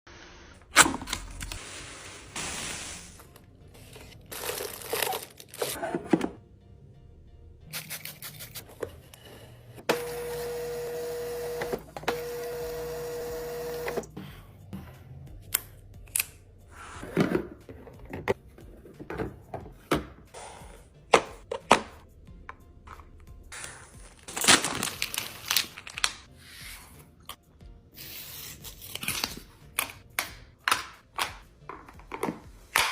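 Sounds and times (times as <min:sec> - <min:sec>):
plastic packaging rustling: 0:03.8 - 0:05.8, 0:23.6 - 0:26.3.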